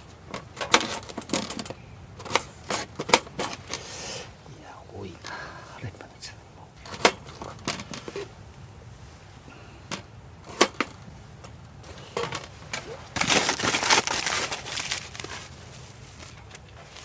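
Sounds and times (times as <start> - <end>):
dense rustling and rattling: 0.0 - 5.5, 6.2 - 17.0.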